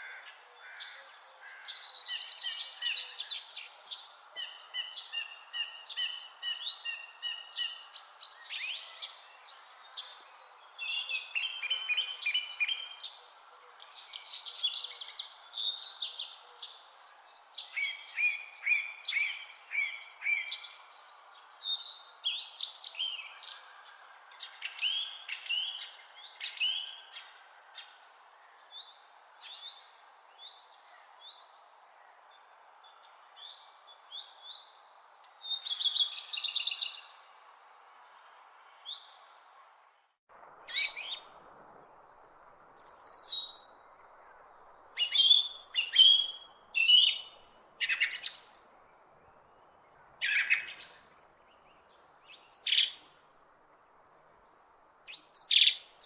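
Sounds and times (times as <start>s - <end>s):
faint steady hiss: 33.4s - 56.0s
birds chirping and trilling: 40.5s - 56.0s.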